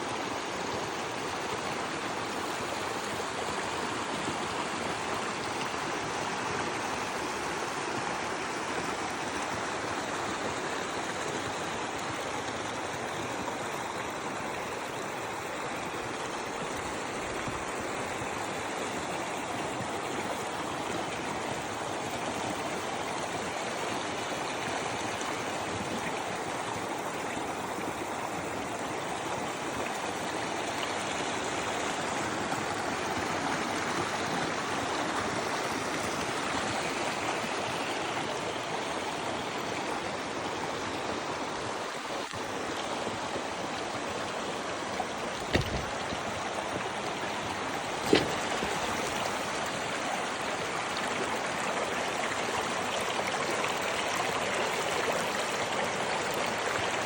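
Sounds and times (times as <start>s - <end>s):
water rushing over rocks: 0.0s - 57.0s
sharp knocks: 45.4s - 46.2s, 48.0s - 48.8s.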